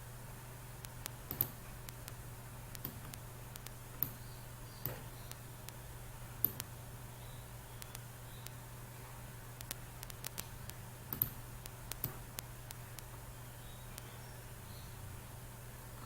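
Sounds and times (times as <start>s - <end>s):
low steady hum: 0.0s - 16.0s
computer mouse clicks: 0.8s - 4.2s, 6.4s - 6.7s, 7.8s - 8.6s, 9.6s - 13.1s.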